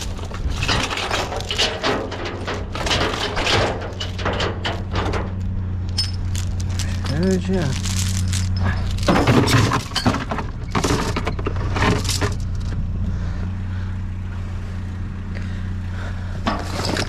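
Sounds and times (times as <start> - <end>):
metal junk clattering: 0.0 - 12.8, 16.4 - 17.0
engine idling: 0.0 - 17.0.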